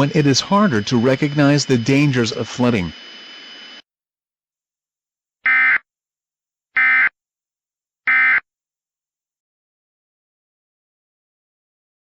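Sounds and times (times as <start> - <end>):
digital data tone bursts: 0.0 - 3.8.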